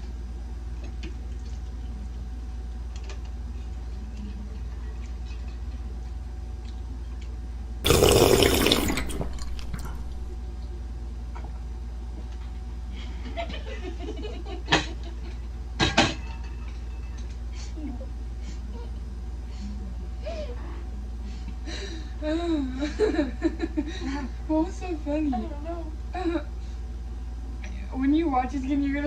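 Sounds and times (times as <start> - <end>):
mouth sounds: 7.9 - 10.4
wet noodle slurp: 7.9 - 10.4.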